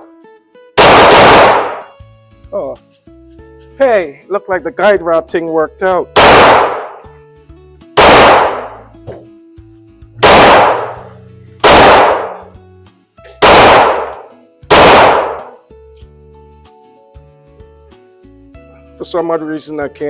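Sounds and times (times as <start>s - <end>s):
background music: 0.0s - 20.0s
pistol shots echoing: 0.8s - 1.9s, 6.2s - 7.1s, 8.0s - 9.0s, 10.2s - 12.5s, 13.4s - 15.6s.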